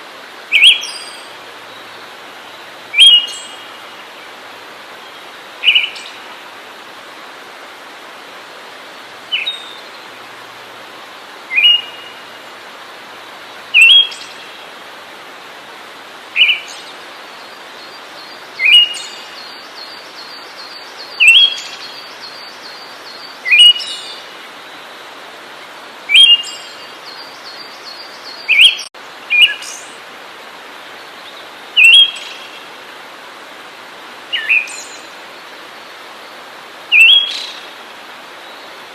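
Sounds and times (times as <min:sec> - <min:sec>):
steady background hiss: 0:00.0 - 0:38.9
songbird chirping: 0:00.5 - 0:04.4, 0:11.5 - 0:12.4, 0:16.4 - 0:30.0.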